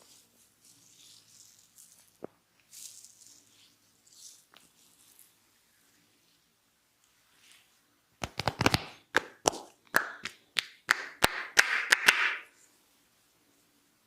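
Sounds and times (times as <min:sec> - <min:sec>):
rubbing on skin and hair: 0:00.0 - 0:05.4
hands slapping head: 0:08.2 - 0:12.5.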